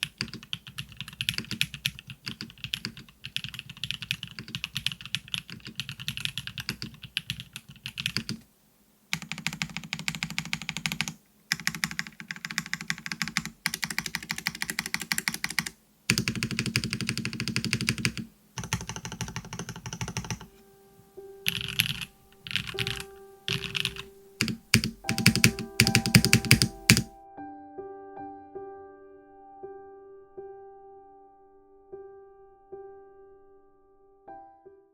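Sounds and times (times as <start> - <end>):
mechanical keyboard typing: 0.0 - 8.4, 9.1 - 20.5, 21.5 - 27.1
soft piano-like music: 0.0 - 8.4, 12.6 - 34.9.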